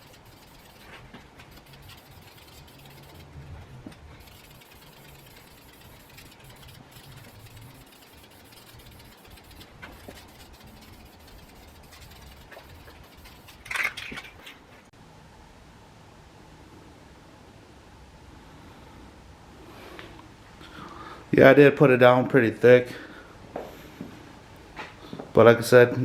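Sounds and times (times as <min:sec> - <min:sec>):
heater humming: 0:00.0 - 0:14.4.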